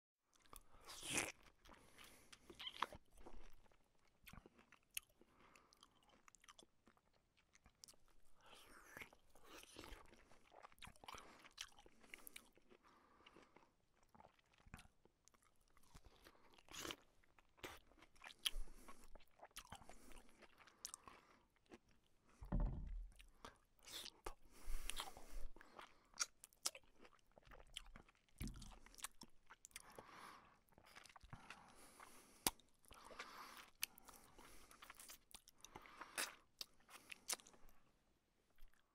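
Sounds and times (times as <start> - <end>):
soft low thumps: 22.4 - 23.2
person eating and slurping soup: 23.1 - 26.4.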